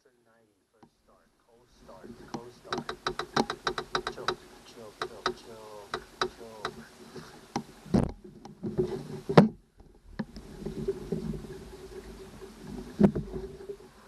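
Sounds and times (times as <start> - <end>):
outboard engine cranking: 1.9 - 9.5
starter clicks: 2.2 - 6.8
loud knocks: 2.7 - 4.4, 5.0 - 6.8.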